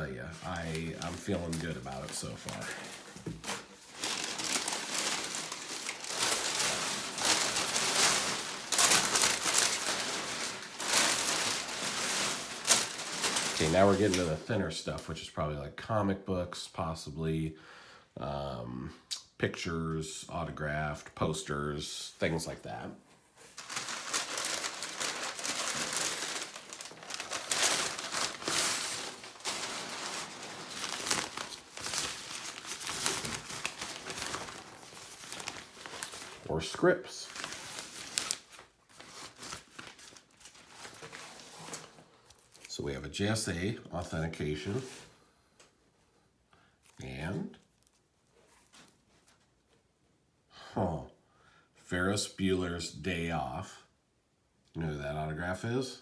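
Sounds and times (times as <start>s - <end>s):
packaging crinkling: 0.0s - 14.5s, 23.5s - 42.7s.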